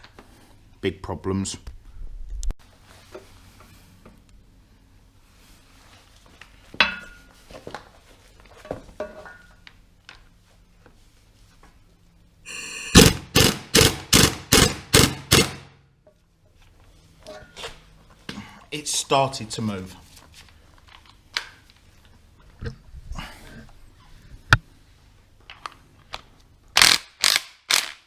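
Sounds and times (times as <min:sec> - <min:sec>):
loud metal impacts: 0:12.6 - 0:15.8.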